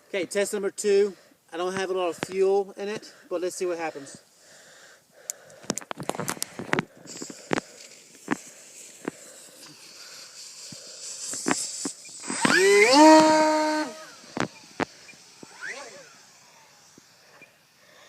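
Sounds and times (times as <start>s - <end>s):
steady high hiss: 0.0s - 18.0s
sharp clicks: 5.2s - 9.8s, 10.5s - 16.1s
electric motor and propeller whine: 7.0s - 18.0s.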